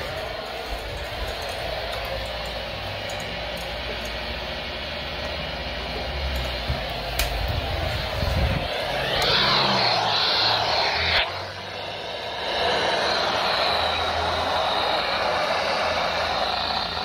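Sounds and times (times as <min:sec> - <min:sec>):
radio static hiss: 0:00.0 - 0:17.0.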